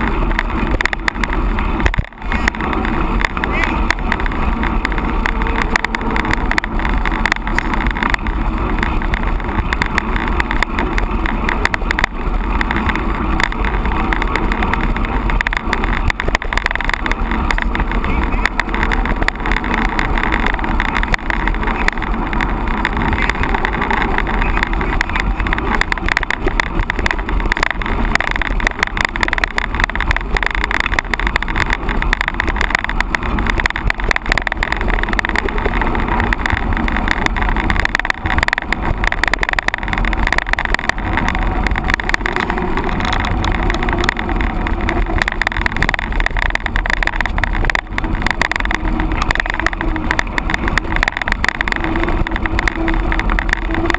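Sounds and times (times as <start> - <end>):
bike tyre and frame rattle: 0.0 - 53.9
wind rushing over microphone: 0.0 - 53.9.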